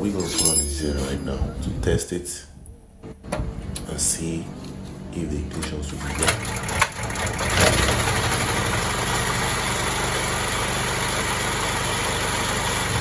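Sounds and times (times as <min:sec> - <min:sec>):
petrol generator starting and running: 0:03.3 - 0:13.0.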